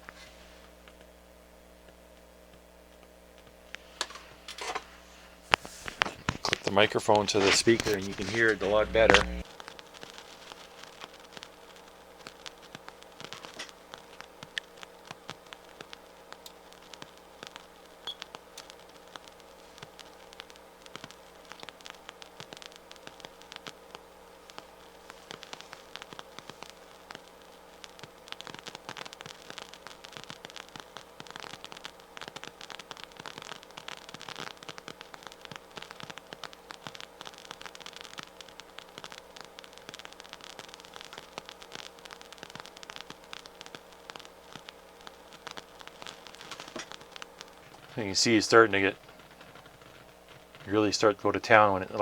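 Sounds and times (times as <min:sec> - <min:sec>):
faint steady hum: 0:00.0 - 0:52.0
loudspeaker hiss and crackling: 0:00.0 - 0:52.0.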